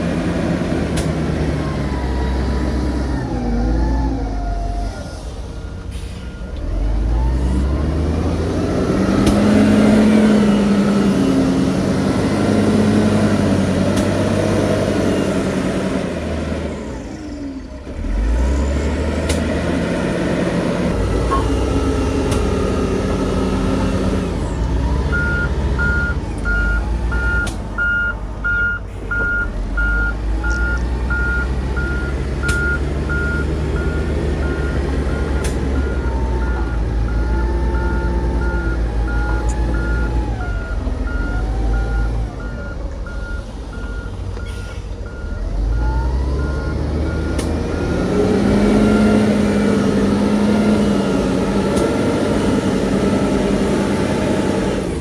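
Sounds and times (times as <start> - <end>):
diesel engine running: 0.0 - 55.0
reversing alarm beeping: 21.2 - 51.0.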